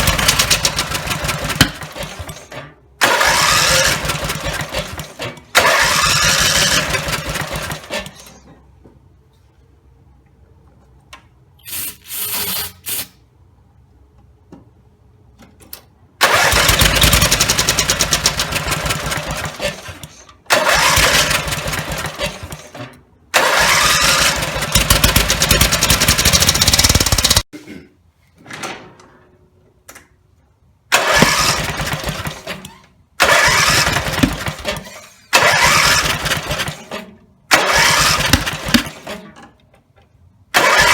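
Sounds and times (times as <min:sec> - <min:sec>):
mower engine starting and dying: 0:00.0 - 0:08.5, 0:16.2 - 0:27.4, 0:30.9 - 0:39.6, 0:40.5 - 0:40.9.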